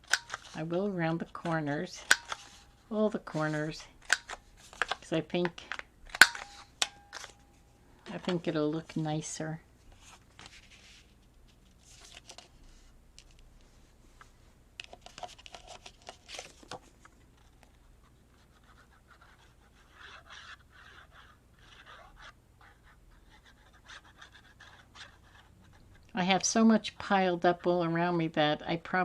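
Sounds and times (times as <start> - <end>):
paper rustling: 9.9 - 25.8.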